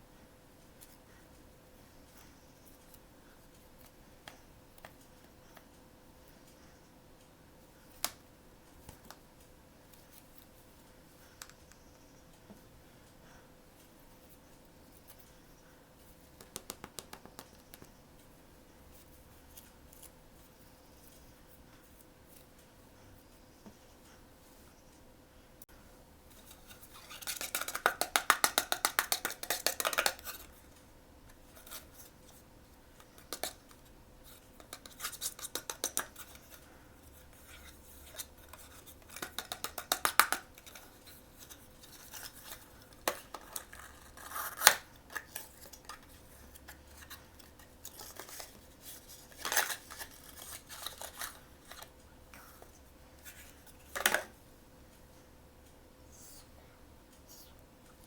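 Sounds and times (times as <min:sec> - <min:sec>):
packaging crinkling and taps: 0:16.4 - 0:17.9, 0:27.2 - 0:30.5.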